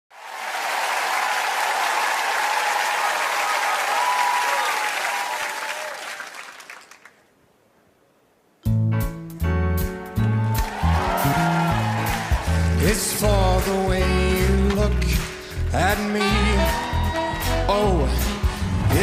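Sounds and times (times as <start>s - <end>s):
audience applauding: 0.1s - 7.4s, 10.2s - 17.6s.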